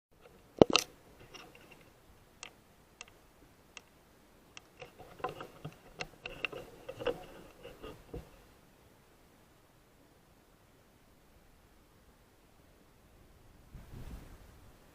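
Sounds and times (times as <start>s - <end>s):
rifle handling clicks and rustling: 0.2s - 3.2s, 4.6s - 8.4s.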